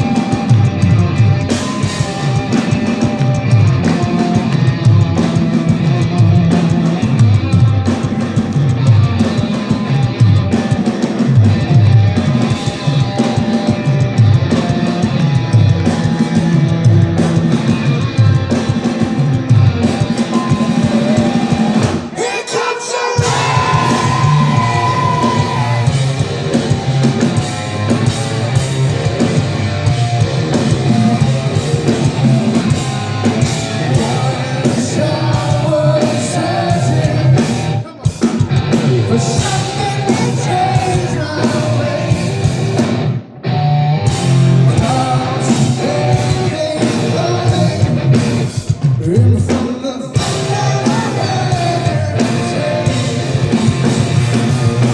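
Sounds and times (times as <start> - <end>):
rock band playing: 0.0 - 54.9
man singing: 19.7 - 26.0, 32.7 - 42.6, 44.6 - 54.6.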